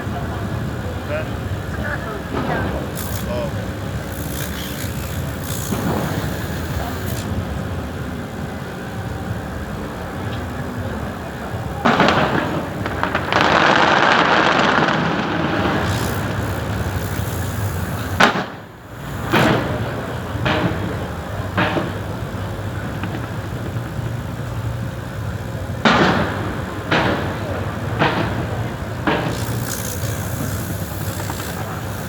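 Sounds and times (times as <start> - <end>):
fireworks booming: 0.0 - 32.0
sharp firework bang: 5.6 - 7.1, 11.7 - 31.9.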